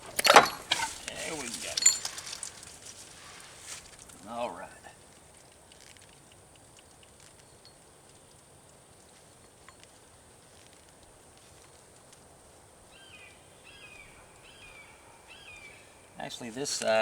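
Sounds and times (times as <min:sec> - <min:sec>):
faint steady hiss: 0:00.0 - 0:17.0
faint light ticks and clicks: 0:04.9 - 0:12.3
bird chirping: 0:12.9 - 0:17.0.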